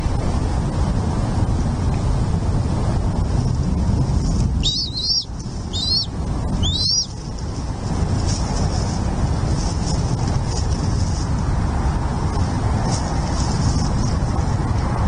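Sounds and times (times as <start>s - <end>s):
wind rumble on microphone: 0.0s - 15.0s
eagle chittering calls: 4.6s - 7.2s.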